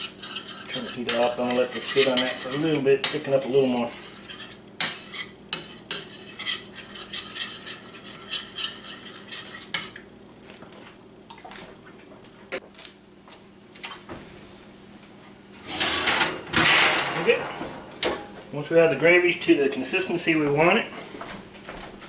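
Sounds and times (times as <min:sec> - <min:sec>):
utensil scraping a frying pan: 0:00.0 - 0:10.0, 0:15.6 - 0:17.9.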